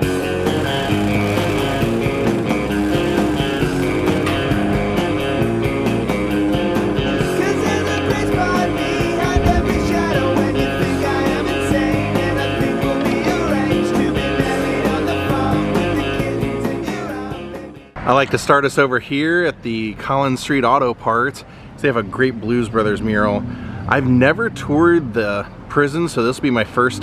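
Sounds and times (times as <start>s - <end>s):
rock music with guitar and beat: 0.0s - 18.0s.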